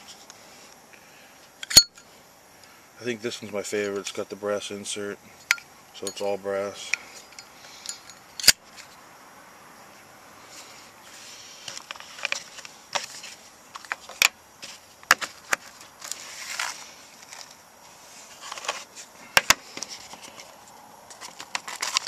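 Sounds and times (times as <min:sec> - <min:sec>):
scratchy rustling: 0:10.5 - 0:22.0.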